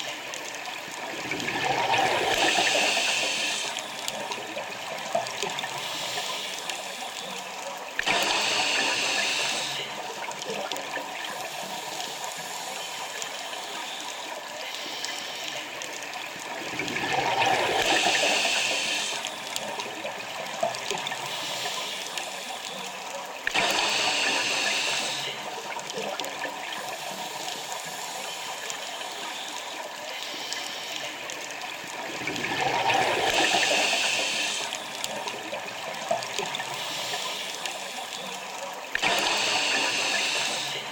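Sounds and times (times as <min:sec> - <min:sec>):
gurgling exhaled bubbles: 0:00.9 - 0:05.8, 0:16.3 - 0:21.3, 0:31.8 - 0:36.8
scuba regulator breath hiss: 0:02.4 - 0:03.8, 0:08.1 - 0:09.9, 0:17.8 - 0:19.4, 0:23.6 - 0:25.4, 0:33.2 - 0:34.8, 0:39.0 - 0:40.9.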